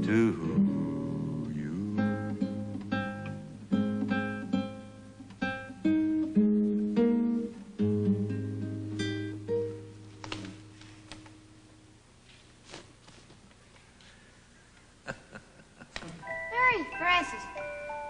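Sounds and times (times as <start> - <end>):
plucked acoustic guitar: 0.0 - 10.7.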